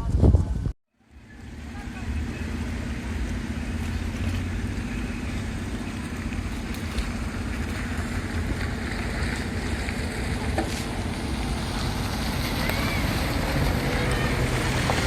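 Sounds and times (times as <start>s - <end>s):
wind noise: 0.0s - 0.8s
engine droning: 1.0s - 15.0s.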